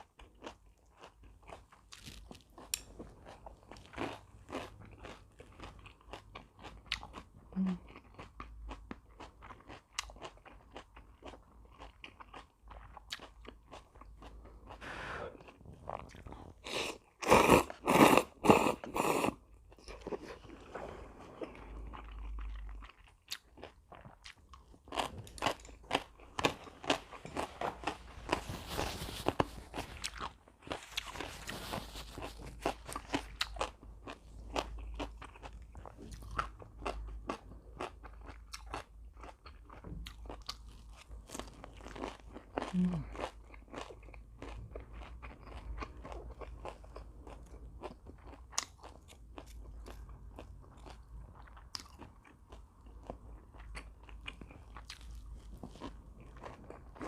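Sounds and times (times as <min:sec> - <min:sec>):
crackly chewing: 0:00.0 - 0:14.8, 0:15.4 - 0:20.7, 0:21.3 - 0:57.0
crunching crispy food: 0:00.3 - 0:14.4, 0:22.0 - 0:51.0.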